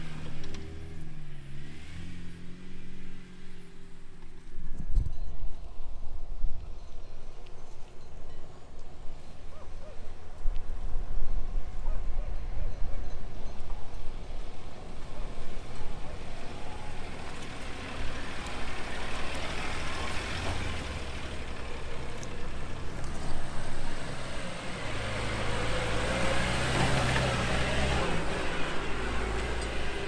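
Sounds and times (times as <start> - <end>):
engine running under load: 0.0 - 4.7, 13.1 - 30.0
tyres rushing over rough ground: 14.6 - 30.0.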